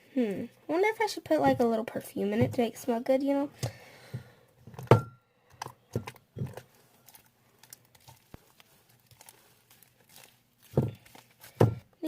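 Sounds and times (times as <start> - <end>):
slime squelching by hand: 6.4 - 11.8.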